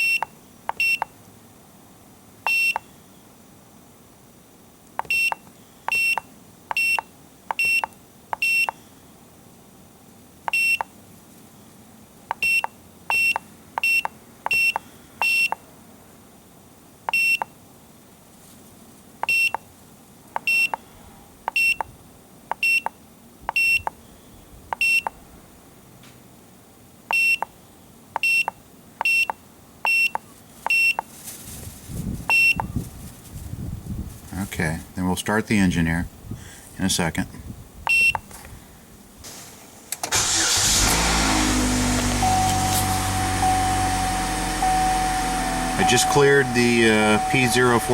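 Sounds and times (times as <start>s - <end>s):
short high beeps: 0.0s - 1.1s, 2.5s - 2.8s, 5.0s - 8.8s, 12.3s - 15.6s, 20.4s - 20.8s, 32.3s - 32.7s, 37.9s - 38.2s, 42.2s - 47.9s
brief rustle: 31.0s - 33.5s.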